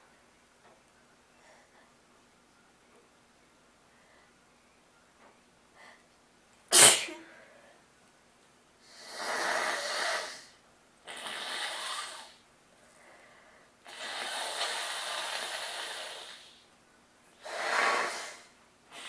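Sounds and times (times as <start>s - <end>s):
person sneezing: 6.7s - 7.3s
nose blowing: 8.9s - 12.4s, 13.8s - 16.6s, 17.4s - 19.0s.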